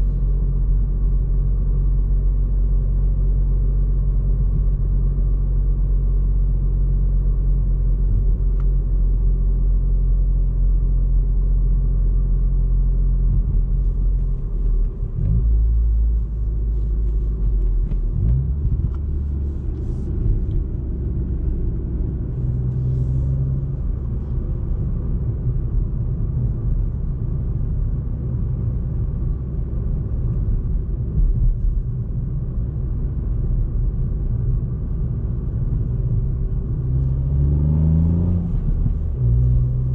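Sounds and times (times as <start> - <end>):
car engine droning: 0.0 - 39.9
road noise: 0.0 - 39.9.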